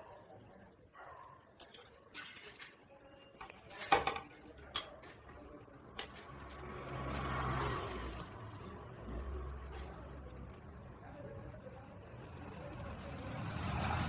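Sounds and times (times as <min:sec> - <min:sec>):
small hard parts clicking: 0:01.5 - 0:10.8.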